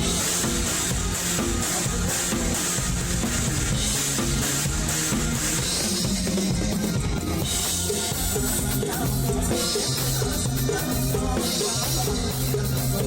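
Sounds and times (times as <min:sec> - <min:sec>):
bass line: 0:00.0 - 0:13.0
drum kit: 0:00.0 - 0:13.0
live band music: 0:00.0 - 0:13.0.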